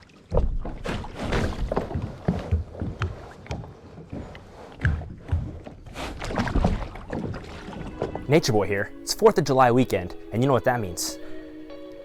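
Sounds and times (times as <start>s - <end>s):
water splashing and sloshing: 0.0s - 12.0s
low bumps and knocks: 0.3s - 8.2s.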